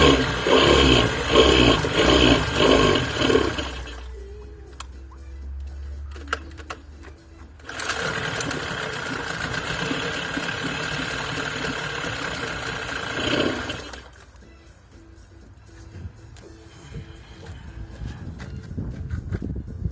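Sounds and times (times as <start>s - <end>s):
outboard motor running: 0.0s - 4.2s, 7.6s - 14.2s.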